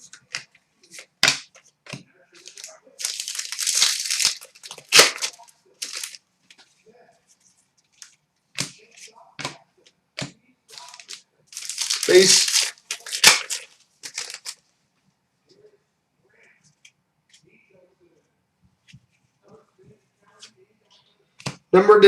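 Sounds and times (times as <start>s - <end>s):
cards clicking and rustling: 0.0s - 6.7s, 10.2s - 14.6s
foil wrapper tearing and crinkling: 2.4s - 6.2s, 10.7s - 14.6s.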